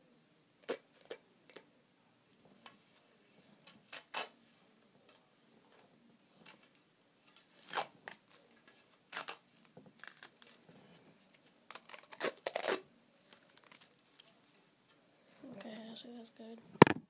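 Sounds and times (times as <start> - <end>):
grip tape ripping off roll: 0.6 - 1.6, 3.8 - 4.3, 7.3 - 8.3, 9.1 - 10.6, 11.7 - 14.0.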